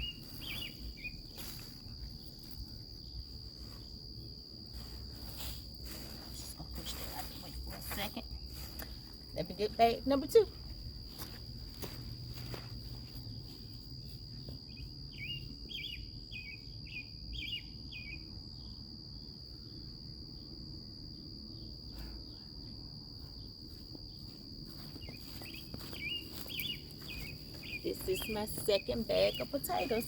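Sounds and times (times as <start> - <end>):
bird chirping: 0.0 - 1.2, 14.7 - 18.2, 25.0 - 29.5
insect trill: 0.0 - 30.0.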